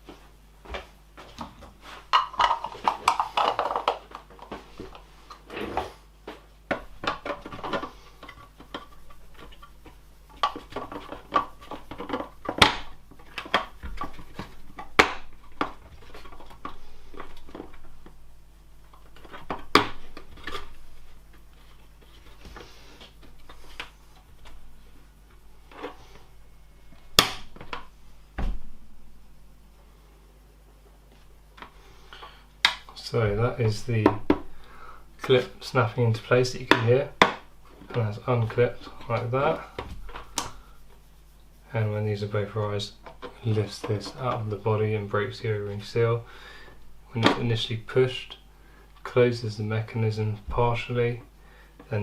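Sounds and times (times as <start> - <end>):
plastic parts clicking and knocking: 2.1 - 5.0, 6.7 - 18.1
plastic parts scraping and rattling: 2.1 - 6.0, 6.7 - 18.0, 18.9 - 24.7.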